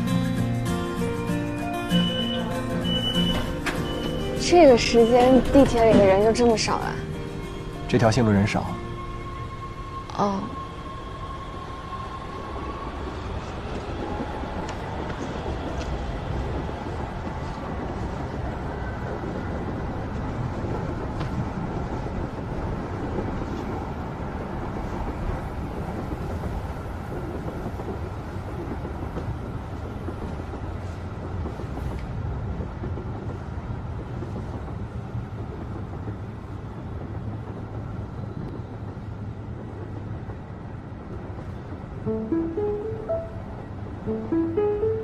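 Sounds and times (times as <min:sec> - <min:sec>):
subway train rumbling: 0:00.0 - 0:45.0.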